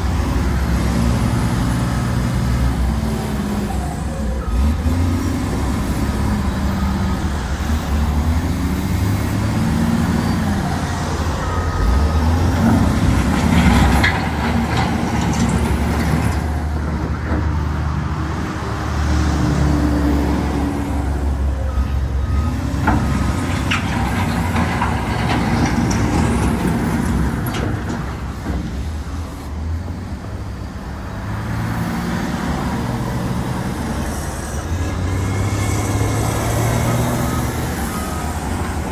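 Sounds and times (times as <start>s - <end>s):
wheel loader diesel engine revving: 0.0s - 38.9s.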